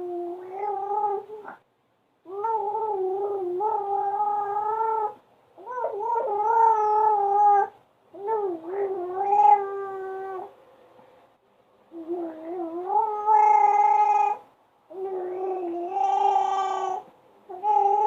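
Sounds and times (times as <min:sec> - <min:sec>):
baby droning vocal noise: 0:02.3 - 0:10.5, 0:11.9 - 0:18.0.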